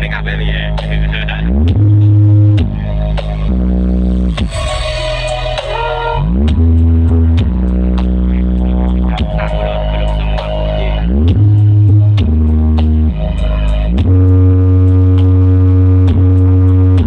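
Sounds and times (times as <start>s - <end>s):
deep sliding bass notes: 0.0s - 17.0s.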